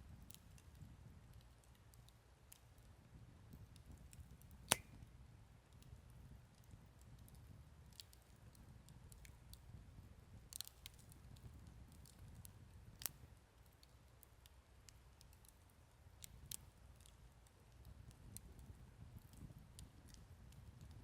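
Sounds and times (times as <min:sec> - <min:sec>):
campfire crackling: 0:03.5 - 0:05.1, 0:05.7 - 0:21.0
sharp pops and snaps: 0:03.8 - 0:05.1, 0:10.5 - 0:12.4.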